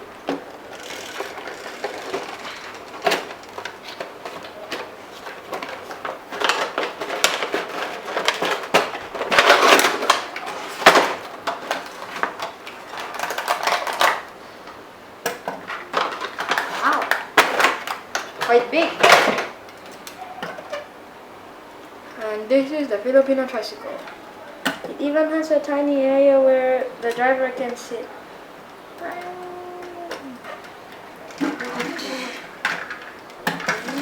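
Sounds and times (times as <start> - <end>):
packaging rustling: 0.4 - 14.3.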